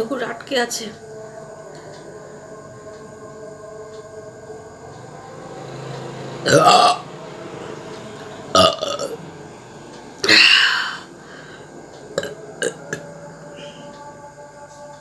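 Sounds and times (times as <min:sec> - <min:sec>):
woman burping loudly: 0:06.4 - 0:07.0, 0:08.5 - 0:09.2, 0:10.2 - 0:11.1, 0:12.2 - 0:13.0.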